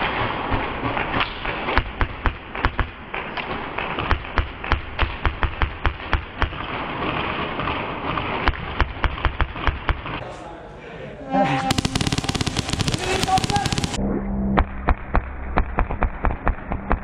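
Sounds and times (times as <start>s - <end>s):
airsoft gunfire clicks: 11.7s - 14.0s.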